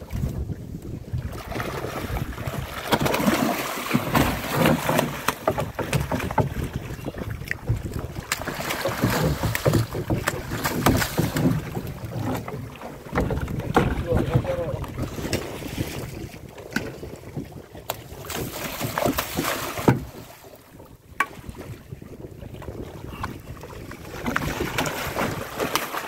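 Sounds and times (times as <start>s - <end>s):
wind buffeting microphone: 0.0s - 19.2s, 19.8s - 25.7s
water: 0.0s - 26.0s
irregular knocks: 4.0s - 6.8s.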